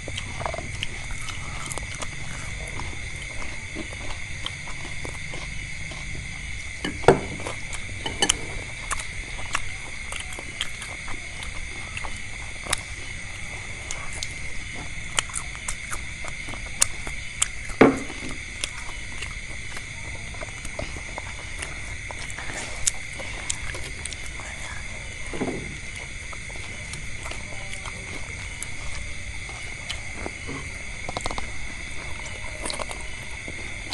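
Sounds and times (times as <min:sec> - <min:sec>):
people chewing food: 0:00.0 - 0:33.9
thin high whine: 0:17.6 - 0:33.9.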